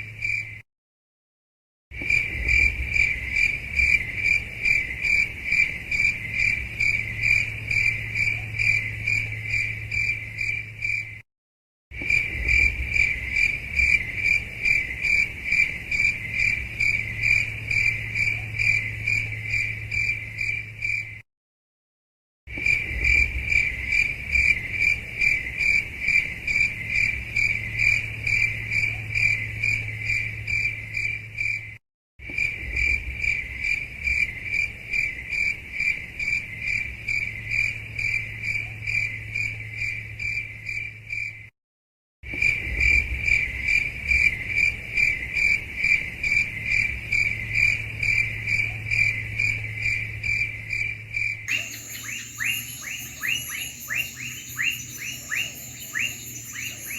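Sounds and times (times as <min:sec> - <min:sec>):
cricket chirping: 0:49.0 - 0:56.9.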